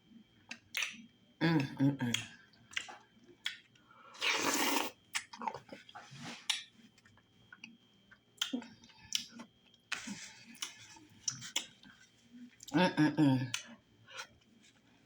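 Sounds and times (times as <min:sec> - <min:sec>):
wet chewing and lip smacks: 0:00.5 - 0:01.1, 0:02.1 - 0:12.0.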